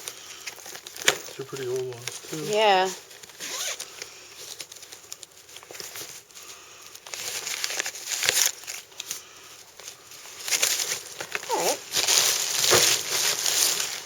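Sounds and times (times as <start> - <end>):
belongings rustling and crinkling: 0.0 - 14.0.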